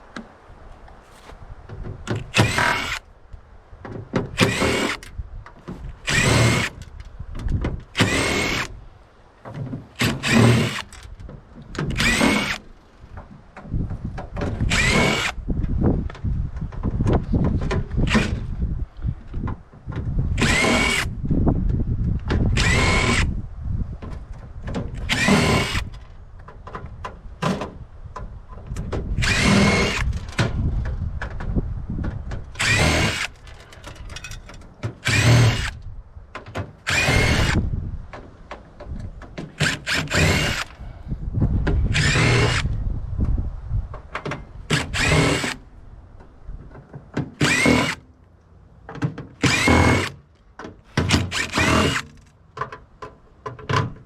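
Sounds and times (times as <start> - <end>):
power drill whining in bursts: 2.3 - 3.0, 4.4 - 5.1, 6.0 - 6.8, 8.0 - 8.7, 10.0 - 11.0, 11.9 - 12.6, 14.7 - 15.4, 20.4 - 21.1, 22.6 - 23.3, 25.0 - 26.0, 29.2 - 30.2, 32.6 - 33.6, 35.0 - 35.8, 36.9 - 37.6, 39.6 - 40.8, 41.9 - 42.7, 44.7 - 45.6, 47.4 - 48.0, 49.4 - 50.2, 50.9 - 52.2.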